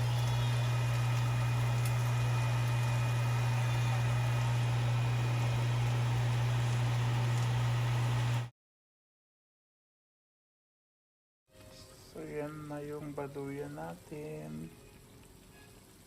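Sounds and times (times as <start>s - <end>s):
steady low hum: 0.0s - 8.5s.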